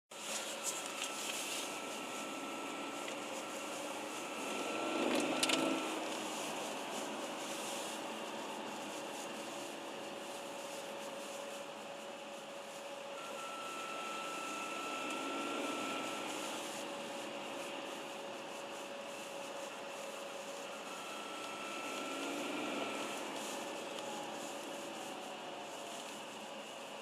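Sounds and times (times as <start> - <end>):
diesel engine running: 0.1 - 27.0
turbo whistle: 13.2 - 16.5.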